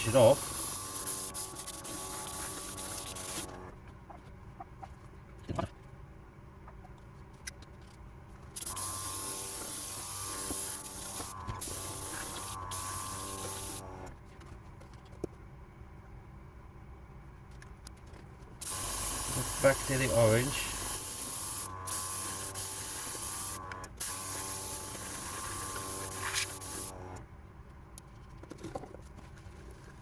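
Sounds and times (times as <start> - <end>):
airbrush air hiss: 0.0 - 3.5, 8.6 - 13.8, 18.6 - 26.9
airbrush compressor humming: 0.0 - 3.7, 8.6 - 14.2, 18.6 - 27.3.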